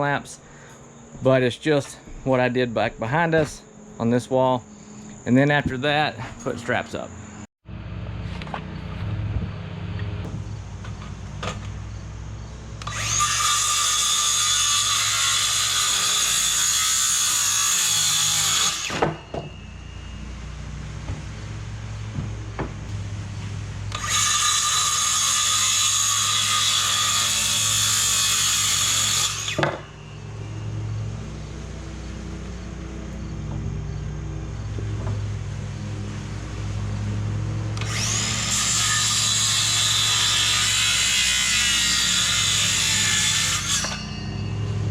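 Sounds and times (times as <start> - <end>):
power tool running: 10.2 - 44.9.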